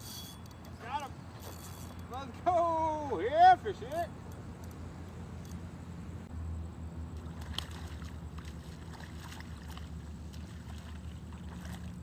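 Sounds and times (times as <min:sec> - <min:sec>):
low motor hum: 0:03.8 - 0:12.0.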